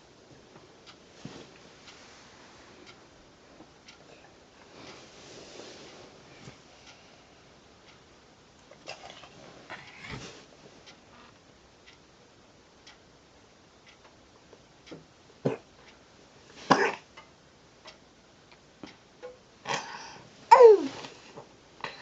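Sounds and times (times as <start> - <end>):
clock ticking faintly: 0.0 - 5.0, 5.9 - 22.0
person coughing: 16.7 - 17.0.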